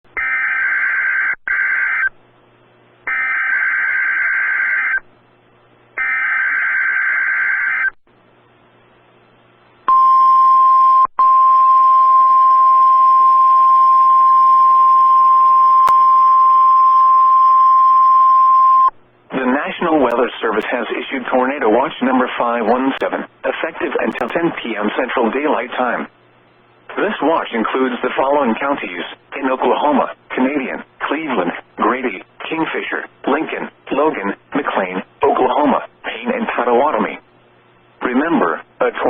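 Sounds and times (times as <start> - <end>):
steady alarm tone: 3.1 - 5.0.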